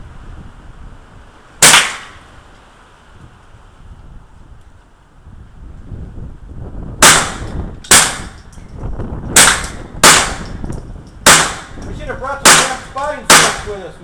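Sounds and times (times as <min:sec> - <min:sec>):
wind rumble on microphone: 0:00.0 - 0:14.0
rifle shots: 0:01.6 - 0:02.2, 0:07.0 - 0:08.4, 0:09.4 - 0:10.6, 0:11.2 - 0:11.8, 0:12.4 - 0:13.8.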